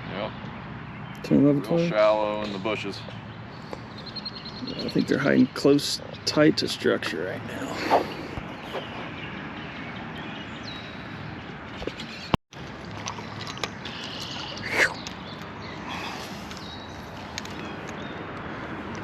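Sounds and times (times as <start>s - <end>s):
faint bird chirps: 2.5s - 6.5s, 7.6s - 11.0s.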